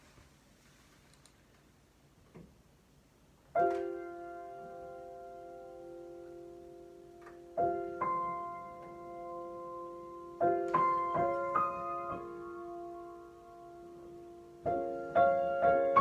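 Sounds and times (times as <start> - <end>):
slow piano improvisation: 3.5 - 16.0.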